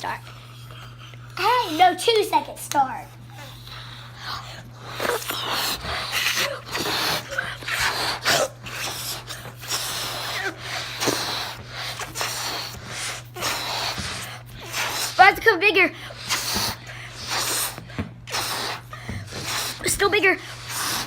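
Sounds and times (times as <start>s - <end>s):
children blowing up balloons: 0.0s - 2.3s, 3.2s - 21.0s
gasping in-breaths: 16.0s - 21.0s.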